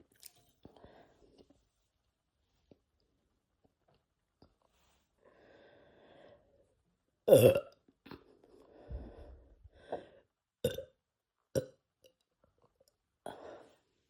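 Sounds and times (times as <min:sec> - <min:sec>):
man burping: 0:07.3 - 0:07.7.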